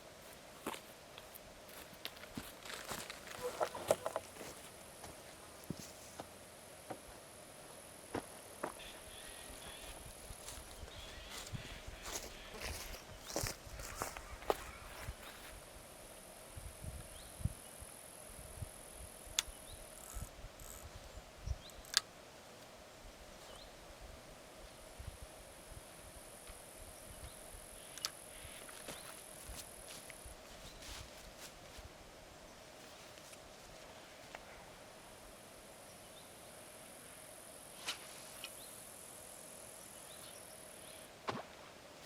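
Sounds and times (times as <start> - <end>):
high insect-like hiss: 0.2 - 32.0, 32.7 - 41.2
high-pitched insect trill: 16.1 - 22.0.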